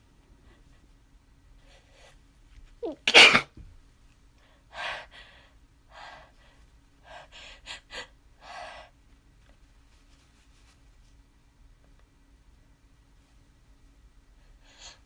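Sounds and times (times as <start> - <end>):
person sneezing: 2.8 - 3.6
person breathing: 4.4 - 9.0.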